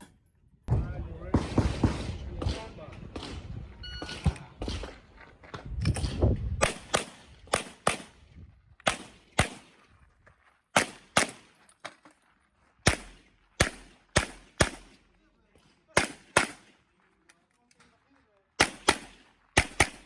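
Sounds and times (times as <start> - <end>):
handgun shots in quick pairs: 5.9 - 8.2, 8.8 - 9.8, 10.8 - 11.6, 12.8 - 15.0, 15.9 - 16.8, 18.6 - 20.0.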